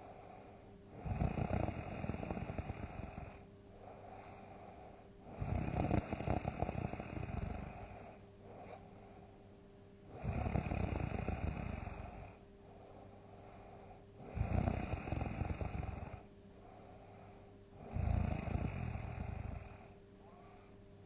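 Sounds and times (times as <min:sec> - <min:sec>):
loud snoring: 0:01.0 - 0:03.5, 0:05.3 - 0:08.2, 0:10.1 - 0:12.4, 0:14.2 - 0:16.3, 0:17.8 - 0:20.0.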